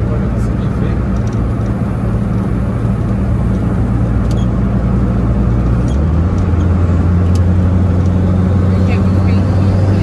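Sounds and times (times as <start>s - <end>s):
car engine and road noise: 0.0s - 10.0s.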